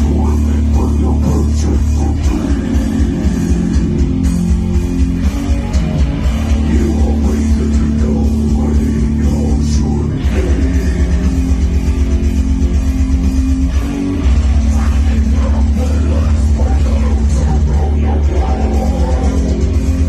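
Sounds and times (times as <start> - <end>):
heavy rock music: 0.0 - 20.0.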